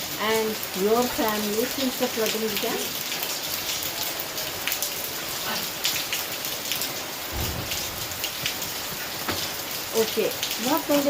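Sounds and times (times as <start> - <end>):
rain falling: 0.0 - 11.0
low rumble: 7.3 - 8.9.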